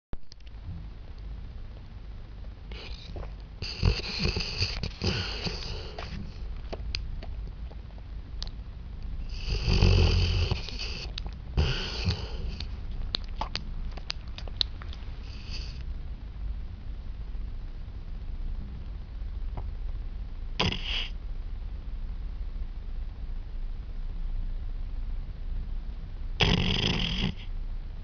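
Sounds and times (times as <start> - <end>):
pet snoring and snuffling: 2.7 - 6.5, 9.2 - 12.7, 15.2 - 15.8, 20.6 - 21.2, 26.4 - 27.5.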